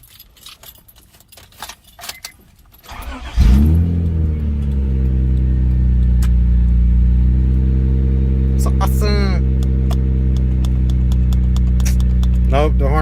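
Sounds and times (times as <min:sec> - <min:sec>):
keys jingling: 0:00.0 - 0:03.4
car engine starting and idling: 0:02.9 - 0:13.0.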